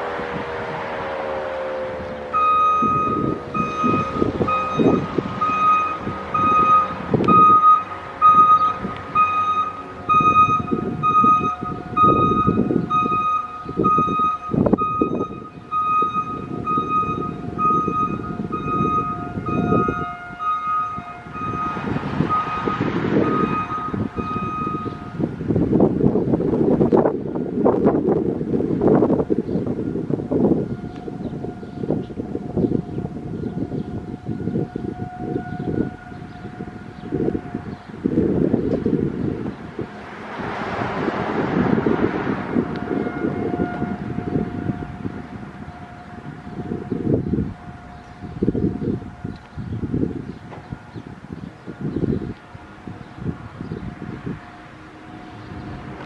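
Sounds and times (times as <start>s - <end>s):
wind rumbling on microphone: 0.0s - 56.0s
mechanical siren winding down: 1.0s - 25.2s
reversing beeper: 1.4s - 25.2s.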